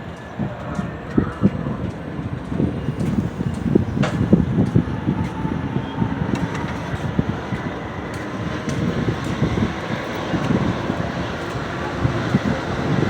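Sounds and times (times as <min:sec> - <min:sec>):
train rumbling through station: 0:00.0 - 0:13.0
clicks from train wheels: 0:00.1 - 0:13.0.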